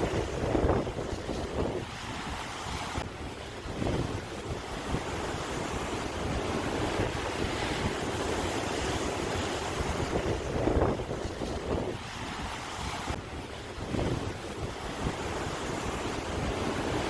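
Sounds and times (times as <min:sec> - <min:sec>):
sea waves surging: 0:00.0 - 0:17.0
wind buffeting microphone: 0:00.0 - 0:17.0.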